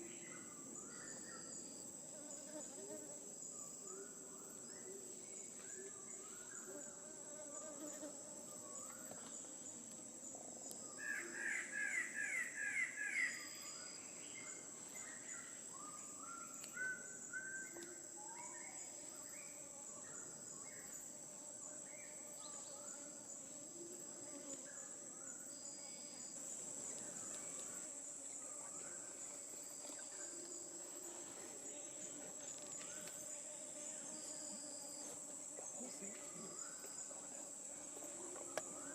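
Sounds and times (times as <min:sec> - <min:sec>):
insect drone: 0:00.0 - 0:38.9.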